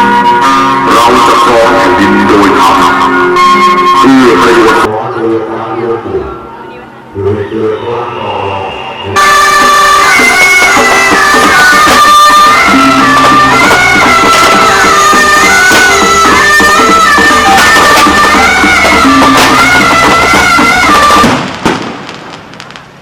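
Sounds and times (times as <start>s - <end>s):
wavering high melody: 0.0s - 21.3s.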